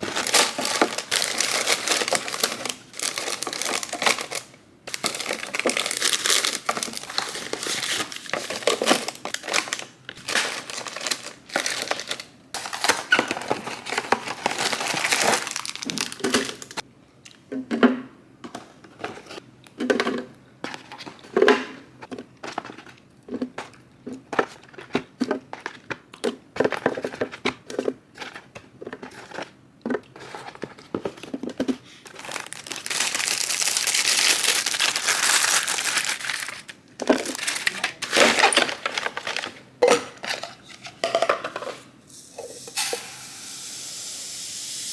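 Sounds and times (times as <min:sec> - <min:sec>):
packaging crinkling and rustling: 0:00.0 - 0:16.8, 0:24.4 - 0:41.7.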